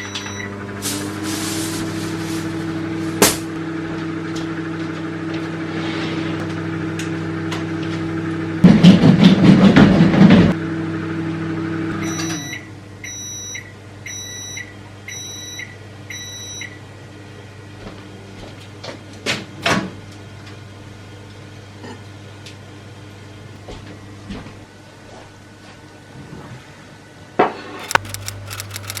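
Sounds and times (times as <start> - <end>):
microwave high beeps: 0.0 - 0.6, 12.0 - 16.8
microwave oven hum: 0.0 - 1.4, 2.1 - 26.3.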